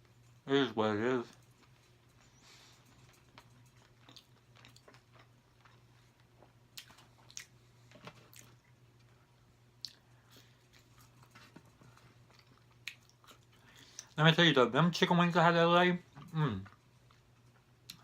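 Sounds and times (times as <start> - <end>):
steady low hum: 0.0 - 18.0
person chewing food: 1.4 - 14.2.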